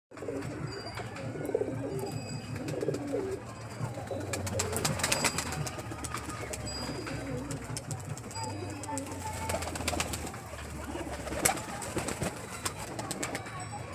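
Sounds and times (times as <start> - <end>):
pigeon cooing: 0.1 - 8.0.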